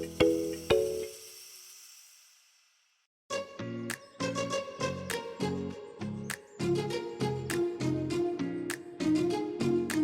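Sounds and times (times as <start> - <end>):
music with steady beat and bass: 0.0 - 1.2.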